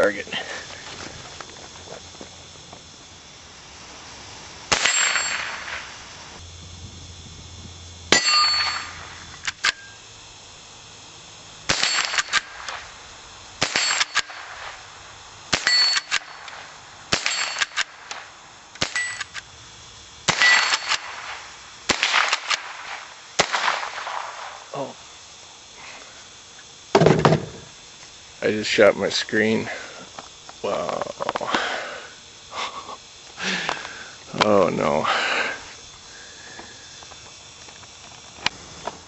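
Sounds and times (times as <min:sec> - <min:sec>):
rifle shots: 0:04.7 - 0:05.8, 0:11.7 - 0:12.8, 0:13.6 - 0:14.8, 0:15.5 - 0:16.4, 0:17.1 - 0:18.2, 0:18.8 - 0:19.3, 0:20.3 - 0:24.6
steel target ringing ding: 0:08.1 - 0:09.0.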